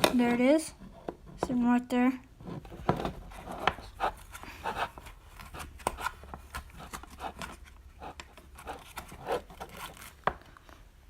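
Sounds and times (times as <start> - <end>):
plastic or cardboard rustling: 2.4 - 10.7.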